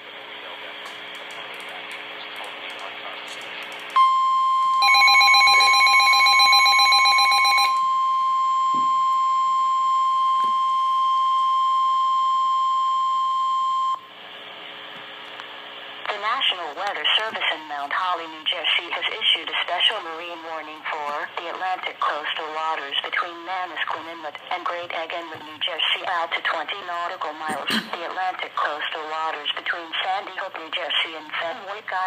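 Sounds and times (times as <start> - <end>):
radio static hiss: 0.0 - 3.9, 14.2 - 32.0
fast pulsing beep: 4.0 - 10.5
steady high alarm tone: 4.0 - 14.1.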